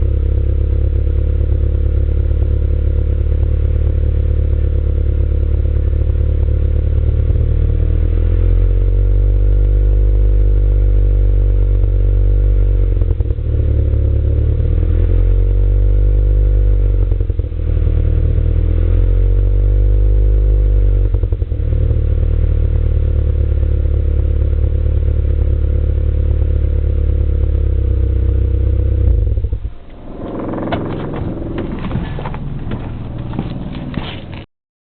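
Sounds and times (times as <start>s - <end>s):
engine misfiring and revving: 0.0s - 34.4s
knocks and rattles: 29.6s - 34.4s.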